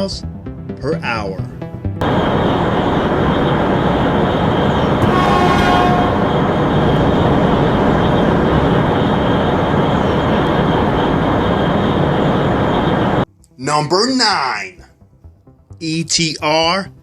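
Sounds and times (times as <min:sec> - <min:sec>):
train rushing at speed: 0:00.0 - 0:13.3
train horn tone: 0:02.0 - 0:08.4.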